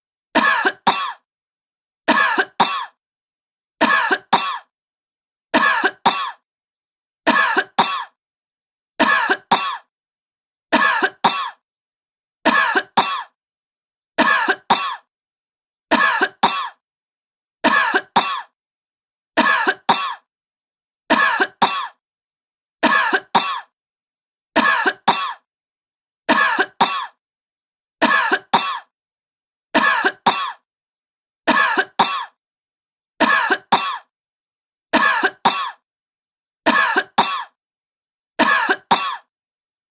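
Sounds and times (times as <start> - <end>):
woman coughing: 0.4 - 1.3, 2.1 - 3.0, 3.8 - 4.7, 5.6 - 6.4, 7.3 - 8.2, 9.0 - 9.9, 10.8 - 11.6, 12.5 - 13.4, 14.2 - 15.1, 15.9 - 16.8, 17.7 - 18.6, 19.4 - 20.3, 21.1 - 22.0, 22.8 - 23.8, 24.6 - 25.5, 26.3 - 27.2, 28.0 - 28.9, 29.8 - 30.6, 31.5 - 32.4, 33.2 - 34.1, 35.0 - 35.8, 36.7 - 37.6, 38.4 - 39.3.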